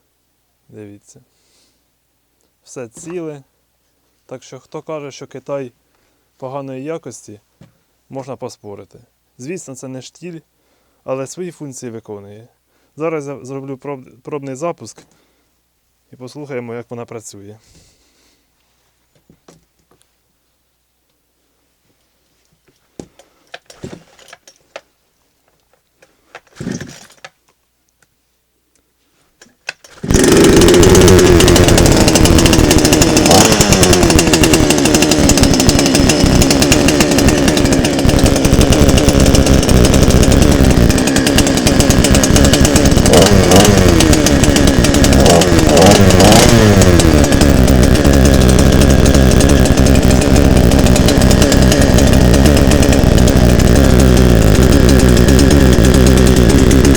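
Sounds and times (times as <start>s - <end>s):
chainsaw engine revving: 29.8s - 56.9s.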